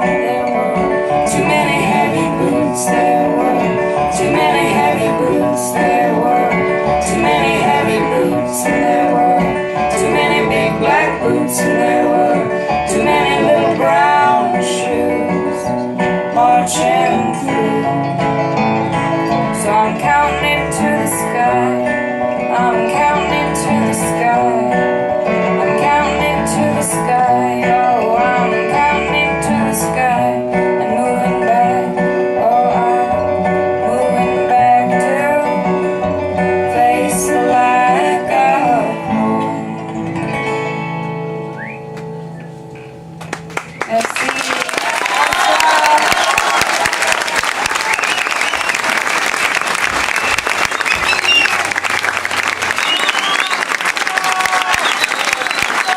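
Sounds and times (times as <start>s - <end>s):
person singing: 0.0s - 40.8s
acoustic guitar: 0.0s - 55.9s.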